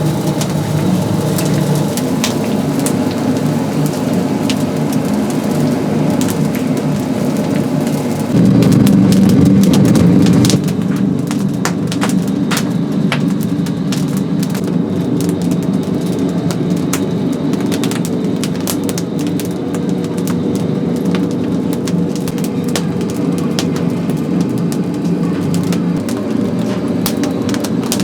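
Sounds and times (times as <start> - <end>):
firewood crackling and popping: 0.0 - 28.0
low hum: 8.3 - 10.8.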